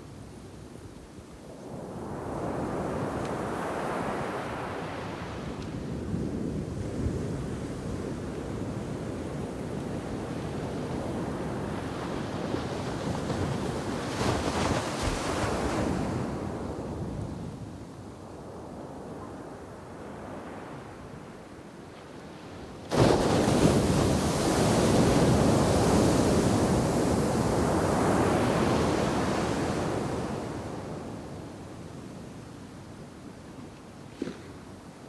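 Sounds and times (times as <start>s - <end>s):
waves crashing on beach: 22.9s - 31.2s.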